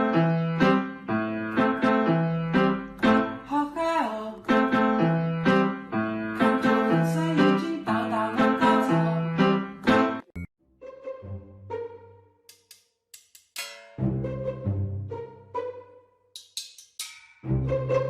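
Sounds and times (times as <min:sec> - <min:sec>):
bright keyboard melody: 0:00.0 - 0:03.5, 0:04.4 - 0:12.3, 0:14.0 - 0:16.3.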